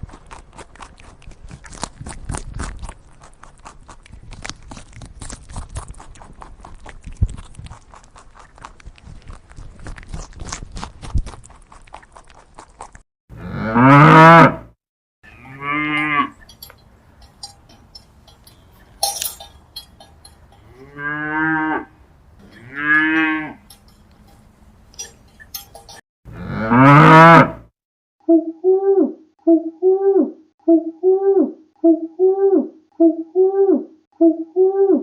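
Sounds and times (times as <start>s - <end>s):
cow mooing: 13.3s - 16.5s, 20.5s - 23.9s, 26.3s - 27.6s
light clinks and knocks: 16.0s - 20.8s, 22.4s - 26.0s.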